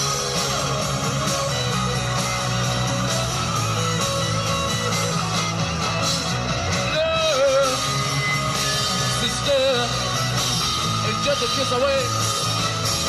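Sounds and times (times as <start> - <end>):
live rock band playing: 0.0 - 13.0.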